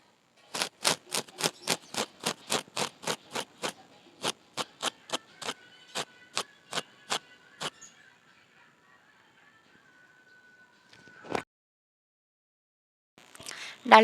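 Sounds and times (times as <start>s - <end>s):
blade chopping leaves: 0.5s - 7.7s.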